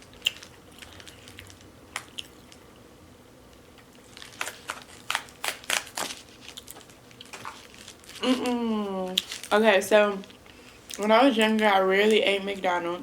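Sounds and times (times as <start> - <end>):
crinkling and crunching: 0.0 - 2.6, 3.7 - 12.7
woman talking: 8.2 - 10.3, 11.0 - 13.0.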